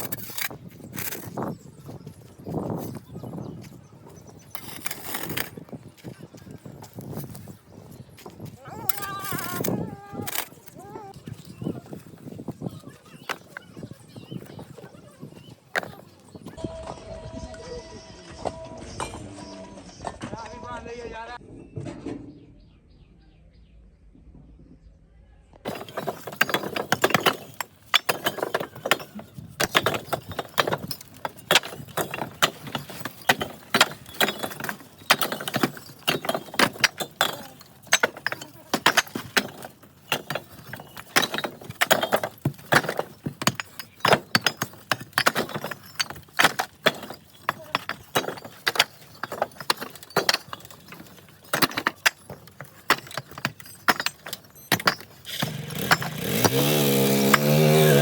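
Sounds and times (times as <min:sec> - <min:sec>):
bricks clinking together: 0:00.0 - 0:16.6, 0:25.7 - 0:58.0.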